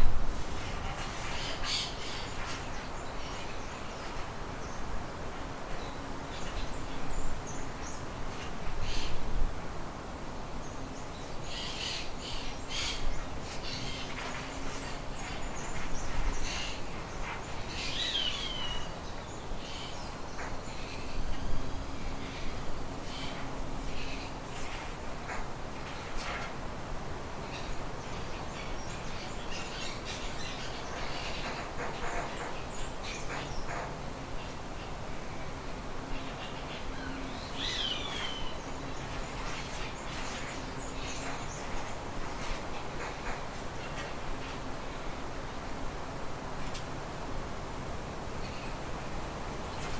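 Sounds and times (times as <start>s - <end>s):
birds chirping: 0.4s - 9.2s, 10.6s - 45.8s.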